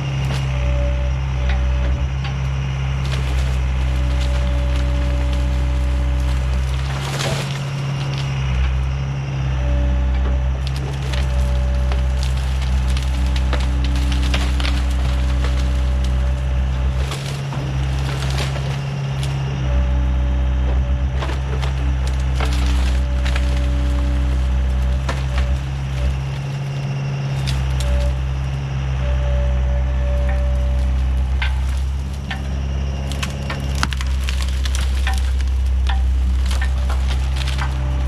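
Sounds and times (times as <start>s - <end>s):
branches cracking and snapping: 0.0s - 38.0s
diesel excavator engine running: 0.0s - 38.0s.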